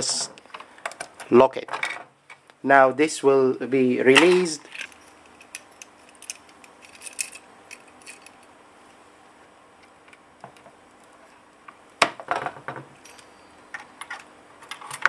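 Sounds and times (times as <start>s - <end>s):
plastic and metal pieces clattering: 4.2s - 8.4s.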